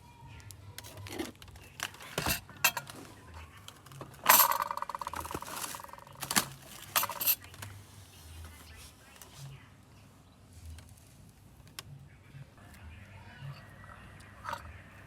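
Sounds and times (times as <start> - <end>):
metal kitchenware clattering: 1.9 - 3.1, 4.0 - 7.5.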